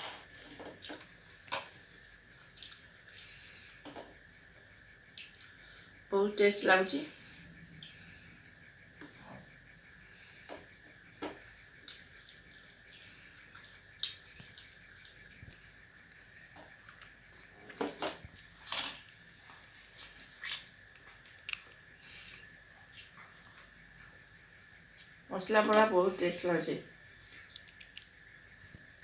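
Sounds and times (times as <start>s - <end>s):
crickets chirping: 0.0s - 29.0s
person chewing crunchy food: 7.6s - 23.7s.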